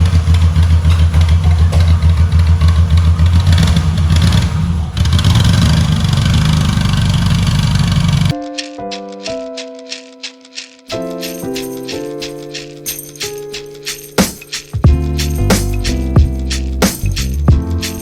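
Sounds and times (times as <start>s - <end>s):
diesel engine pulsing: 0.0s - 8.3s
music: 8.3s - 18.0s.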